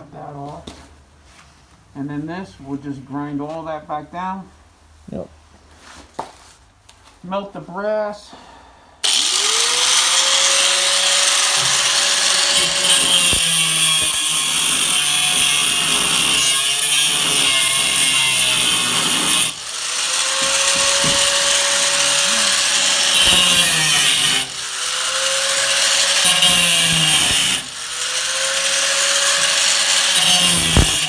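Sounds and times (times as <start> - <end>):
grinder grinding metal: 9.0 - 31.0.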